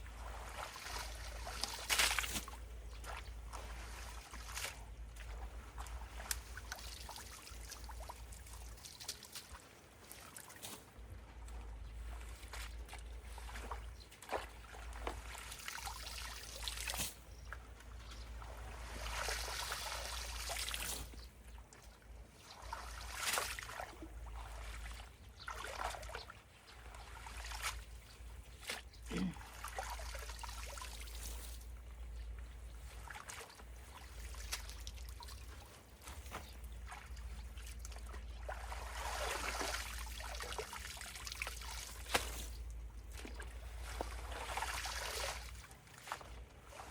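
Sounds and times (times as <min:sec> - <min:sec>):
water splashes: 0:00.0 - 0:46.9
water trickling and sloshing: 0:00.0 - 0:46.9.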